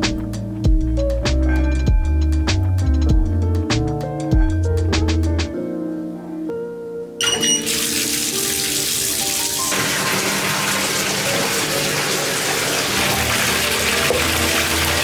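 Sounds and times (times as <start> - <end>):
background music: 0.0 - 15.0
water running: 7.2 - 15.0.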